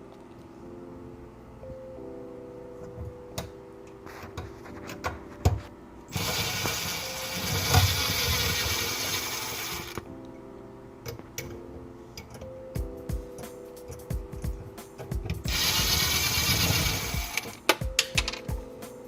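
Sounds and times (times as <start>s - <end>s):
faint background music: 0.0s - 19.0s
power drill running: 6.1s - 10.0s, 15.5s - 17.5s
tool handling clicks and knocks: 17.4s - 18.5s.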